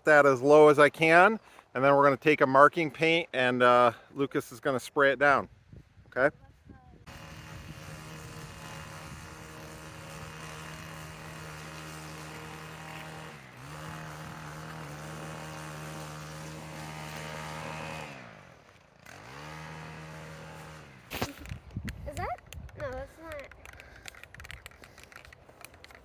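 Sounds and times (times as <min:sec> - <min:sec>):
string trimmer engine running: 0:07.0 - 0:22.2.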